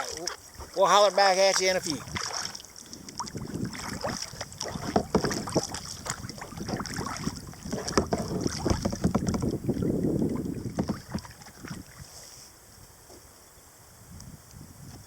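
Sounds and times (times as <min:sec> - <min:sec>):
paddle splashing in water: 0:00.0 - 0:12.4
wind buffeting microphone: 0:01.8 - 0:12.2, 0:13.9 - 0:15.0.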